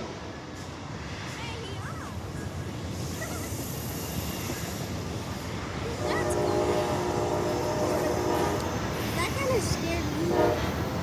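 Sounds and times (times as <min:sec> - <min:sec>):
passing train rumble: 0:00.0 - 0:11.0
train horn chord: 0:06.0 - 0:09.0, 0:10.3 - 0:10.8.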